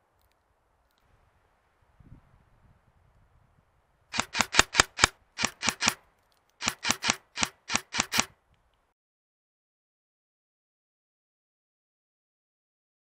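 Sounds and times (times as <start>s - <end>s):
airsoft gun shots: 4.2s - 6.0s, 6.6s - 8.3s.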